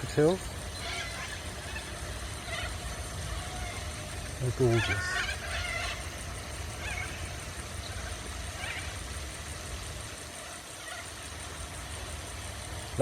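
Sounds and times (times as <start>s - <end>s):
faint parrot squawks: 0.8s - 6.1s, 6.8s - 7.3s, 7.9s - 9.0s, 10.4s - 11.2s.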